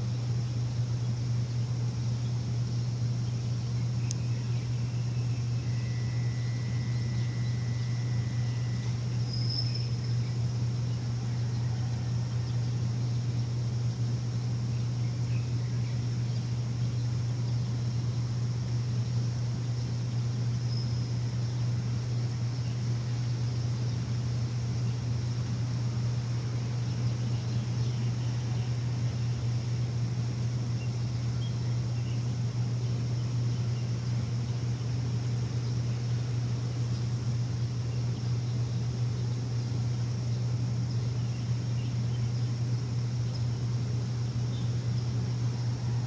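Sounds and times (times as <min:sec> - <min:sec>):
faint high bird chirps: 0:00.0 - 0:46.0
machine low hum: 0:00.0 - 0:46.0
thin whistle-like tone: 0:04.1 - 0:10.3.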